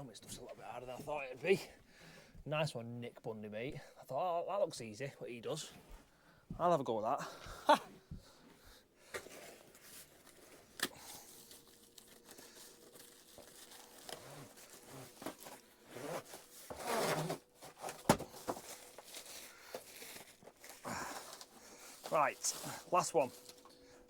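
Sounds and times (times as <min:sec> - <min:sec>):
rustling and crinkling: 0:07.4 - 0:24.0.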